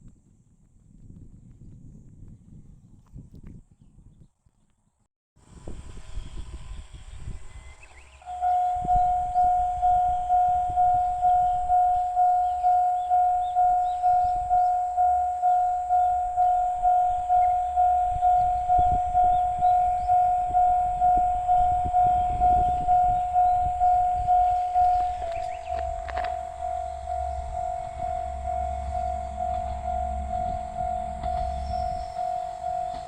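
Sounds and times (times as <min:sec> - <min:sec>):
level crossing alarm dinging: 0:08.2 - 0:33.0.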